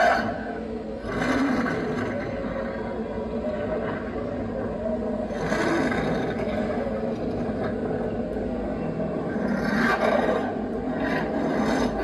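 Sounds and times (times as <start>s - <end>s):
recorded wolf growl: 0.0s - 3.0s, 5.2s - 7.9s, 9.3s - 12.0s.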